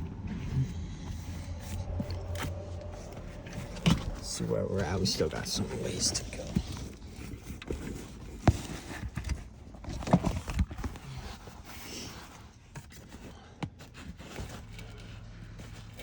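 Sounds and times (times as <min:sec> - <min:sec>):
leather seat cover rustling: 0:00.0 - 0:16.0.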